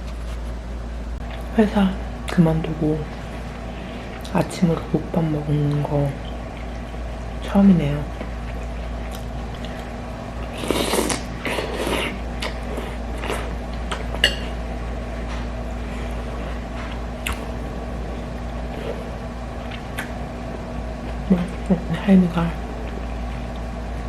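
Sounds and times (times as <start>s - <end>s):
low hum: 0.0s - 24.0s
person eating: 8.1s - 21.9s
spoon clinking against bowl: 14.2s - 14.6s.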